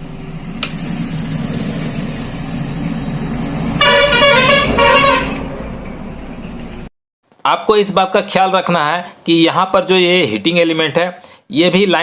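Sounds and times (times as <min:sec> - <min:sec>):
hair dryer running: 0:00.0 - 0:03.7
vehicle horn honking: 0:03.8 - 0:05.5.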